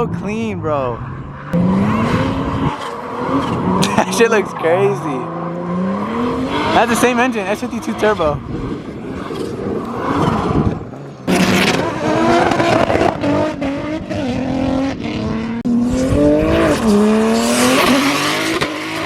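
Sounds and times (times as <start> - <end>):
car engine revving: 0.0 - 19.0
tires squealing: 1.0 - 13.8.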